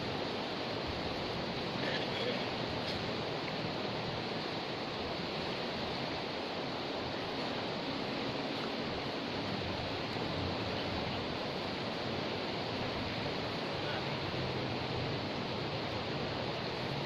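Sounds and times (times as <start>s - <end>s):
river rushing: 0.0s - 17.0s.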